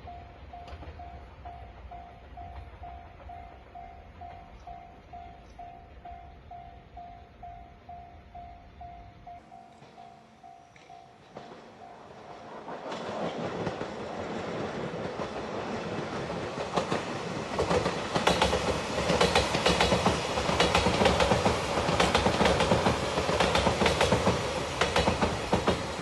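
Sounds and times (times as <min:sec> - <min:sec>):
electric train passing: 0:00.0 - 0:26.0
train wheels clicking over rail joints: 0:09.4 - 0:26.0.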